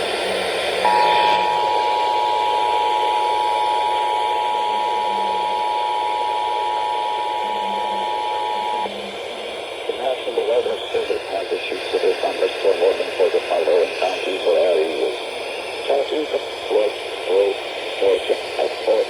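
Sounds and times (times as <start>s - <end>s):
radio hiss: 0.0s - 19.0s
two-tone alarm: 0.8s - 8.9s.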